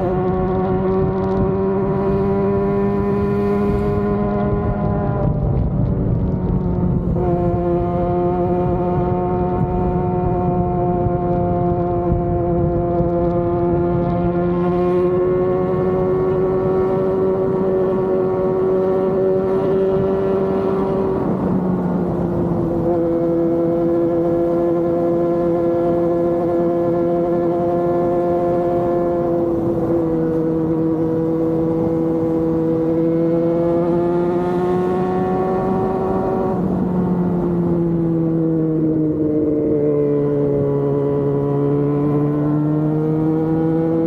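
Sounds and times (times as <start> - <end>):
motorcycle engine high revs: 13.4 - 38.4, 39.1 - 44.0.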